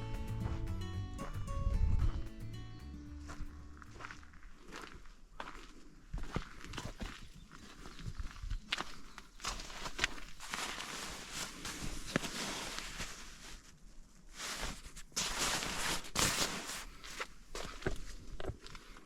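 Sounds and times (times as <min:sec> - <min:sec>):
footsteps: 0:00.0 - 0:13.1
tarp rustling: 0:09.7 - 0:17.3.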